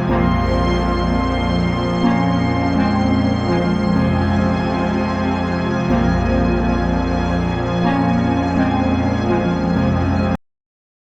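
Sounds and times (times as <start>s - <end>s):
dark synthesised chords with deep bass: 0.0s - 10.4s.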